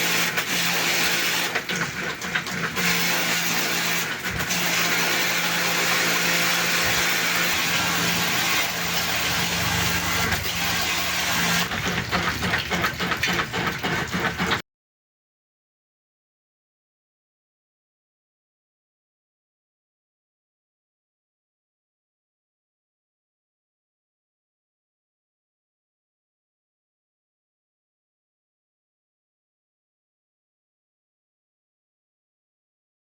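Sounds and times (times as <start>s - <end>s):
pressure washer motor hum: 0.0s - 14.6s.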